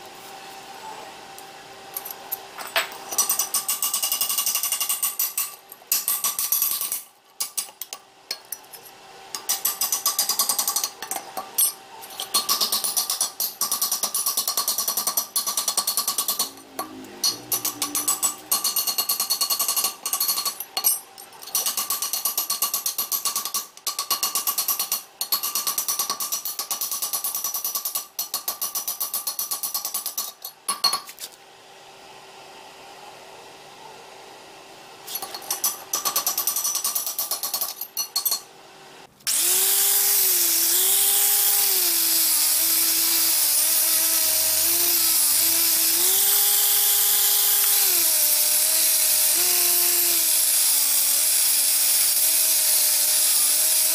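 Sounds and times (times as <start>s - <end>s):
power tool chattering on metal: 9.4s - 30.9s
loud motor-driven tool: 15.9s - 20.5s, 39.3s - 53.9s
faint hum: 31.3s - 35.6s.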